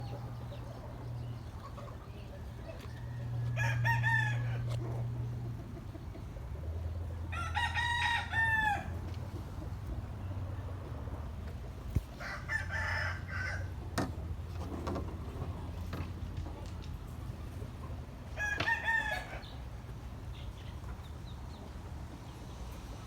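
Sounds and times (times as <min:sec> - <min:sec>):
chicken crowing: 0:02.8 - 0:05.1, 0:07.3 - 0:09.1, 0:12.2 - 0:13.9, 0:18.3 - 0:19.6.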